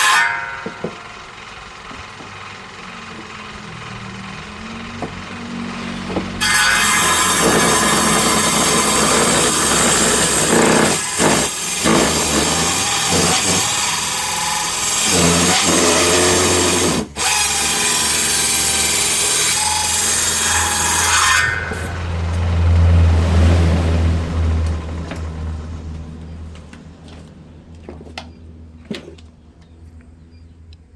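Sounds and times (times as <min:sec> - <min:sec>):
saw motor humming: 0:00.0 - 0:22.5
power saw ripping a board: 0:06.2 - 0:22.0.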